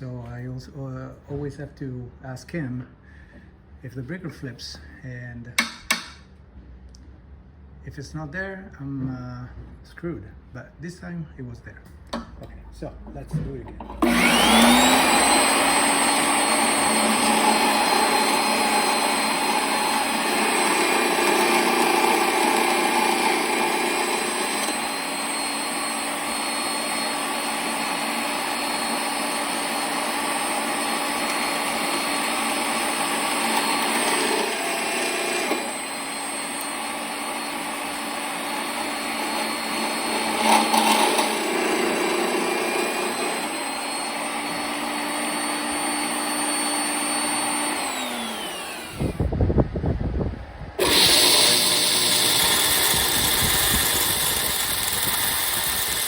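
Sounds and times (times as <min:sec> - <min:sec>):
power tool motor running: 0:14.0 - 0:49.4, 0:50.8 - 0:56.0.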